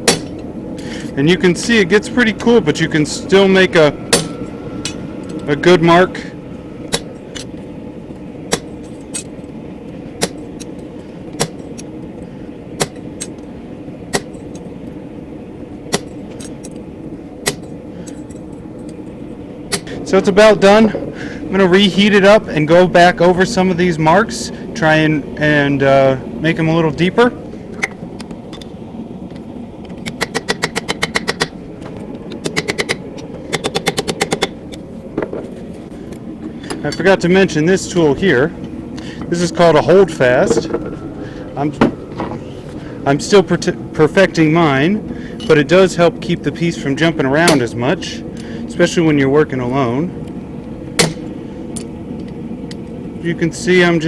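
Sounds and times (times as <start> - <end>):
steady hum: 0.0 - 54.0
hammer striking chisel on steel: 0.1 - 0.4, 4.1 - 5.4.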